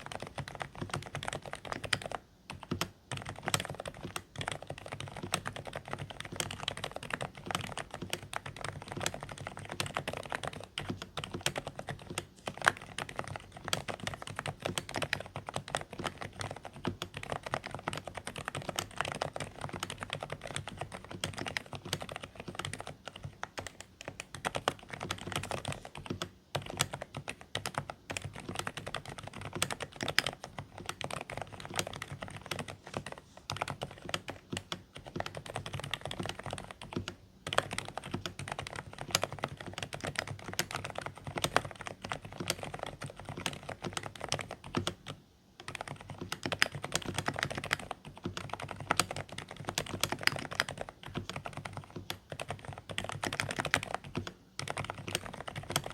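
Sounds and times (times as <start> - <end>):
muffled keyboard typing: 0.0 - 55.9.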